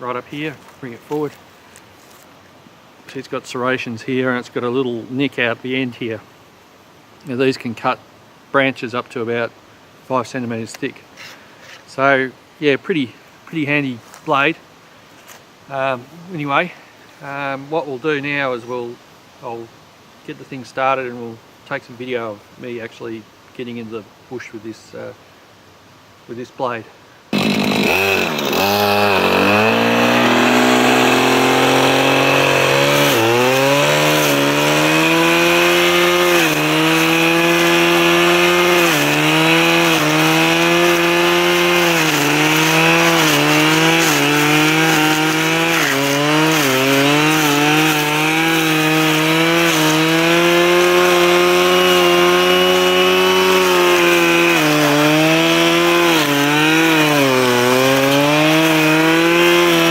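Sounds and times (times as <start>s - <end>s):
brushcutter engine at high revs: 27.3s - 59.9s.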